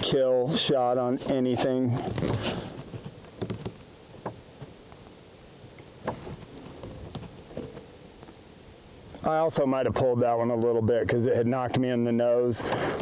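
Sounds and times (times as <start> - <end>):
faint knocks and rustles: 1.3 - 5.2, 5.8 - 8.4.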